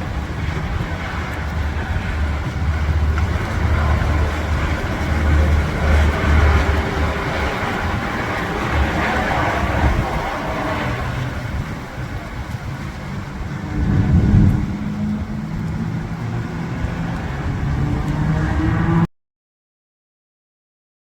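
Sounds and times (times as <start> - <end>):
rainstorm: 0.0 - 19.1
wind gusting on microphone: 0.0 - 19.1.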